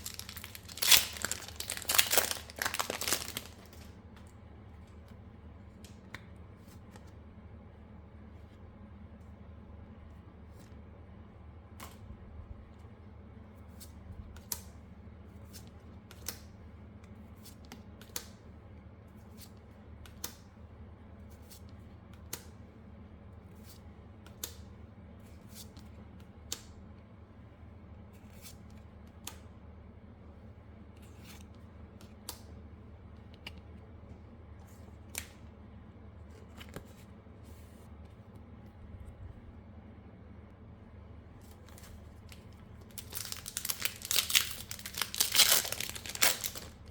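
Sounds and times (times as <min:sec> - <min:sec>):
trading cards snapping: 0:00.0 - 0:03.9, 0:41.7 - 0:46.9
cards rustling and ticking: 0:00.0 - 0:05.2, 0:41.4 - 0:46.9
low steady hum: 0:00.0 - 0:46.9.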